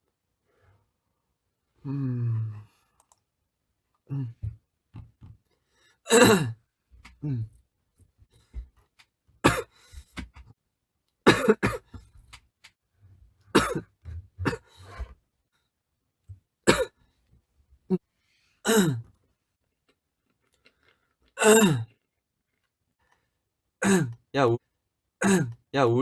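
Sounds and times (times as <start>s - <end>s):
man coughing: 6.1s - 6.6s, 9.4s - 9.7s, 11.3s - 12.0s, 13.5s - 15.0s, 16.7s - 17.0s, 18.7s - 19.0s, 21.4s - 21.9s, 23.8s - 24.2s, 25.2s - 25.6s.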